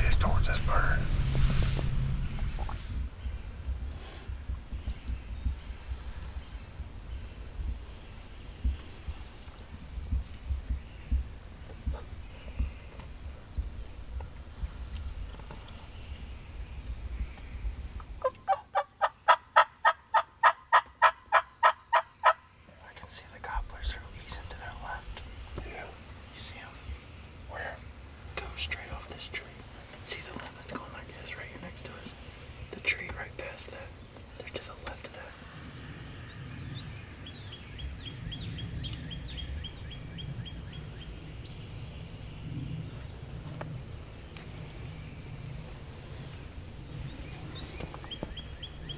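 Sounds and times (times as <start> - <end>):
steady low rumble: 0.0 - 4.6
songbird high chirps: 36.2 - 43.0.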